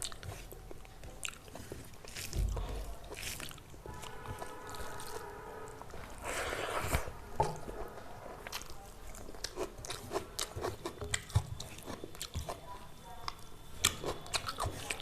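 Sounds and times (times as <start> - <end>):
person chewing crunchy food: 0.0 - 15.0.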